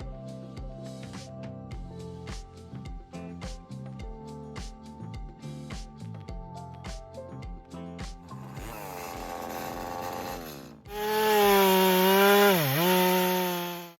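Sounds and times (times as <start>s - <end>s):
background music: 0.0s - 13.7s
chainsaw engine at high revs: 8.4s - 14.0s.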